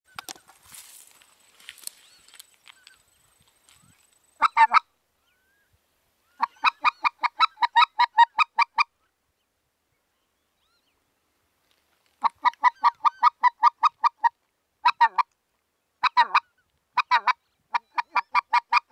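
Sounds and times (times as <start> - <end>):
goose call honking: 4.4 - 4.9, 6.4 - 8.9.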